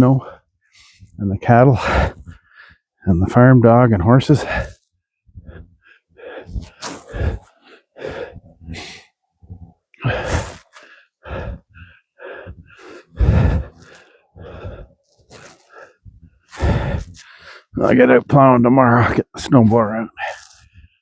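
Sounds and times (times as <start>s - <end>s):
footsteps crunching in deep snow: 15.1s - 15.8s.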